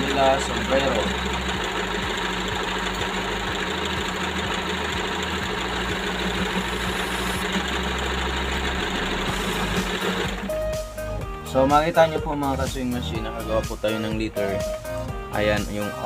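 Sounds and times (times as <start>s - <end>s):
sewing machine running: 0.0s - 11.2s.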